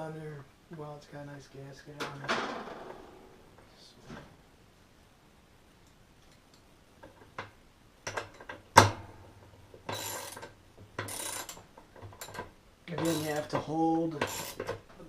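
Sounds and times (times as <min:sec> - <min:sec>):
sharp knock: 0:02.3 - 0:03.4
ratchet clicking: 0:09.9 - 0:11.6, 0:14.2 - 0:14.8.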